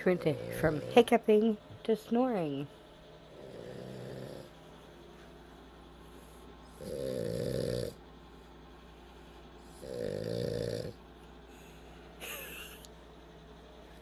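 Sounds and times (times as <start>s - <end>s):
dog snoring: 0.0s - 1.1s, 3.3s - 4.6s, 6.6s - 8.0s, 9.6s - 11.1s.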